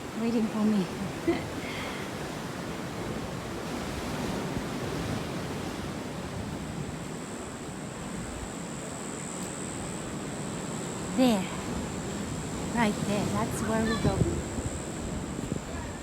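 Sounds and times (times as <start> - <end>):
wind on microphone: 2.2 - 16.0.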